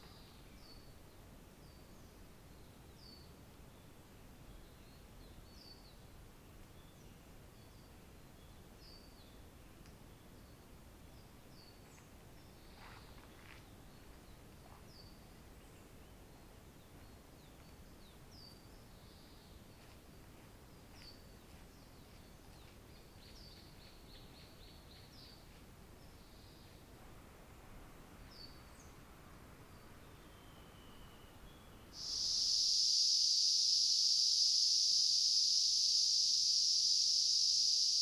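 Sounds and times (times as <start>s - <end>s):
songbird calls: 0.0s - 3.3s, 29.7s - 38.0s
low steady hiss: 0.0s - 38.0s.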